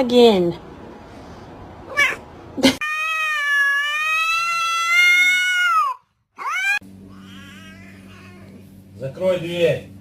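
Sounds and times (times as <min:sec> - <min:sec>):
cat meowing: 0:01.9 - 0:02.2, 0:02.8 - 0:08.7
cat sharp cry: 0:01.9 - 0:02.2, 0:02.8 - 0:08.6.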